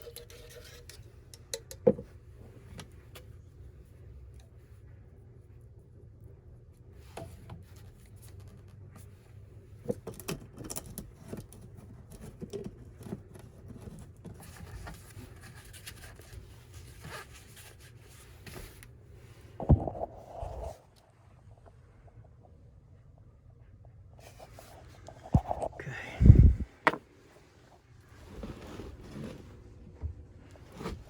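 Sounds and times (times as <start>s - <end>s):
objects being handled: 24.2s - 25.8s.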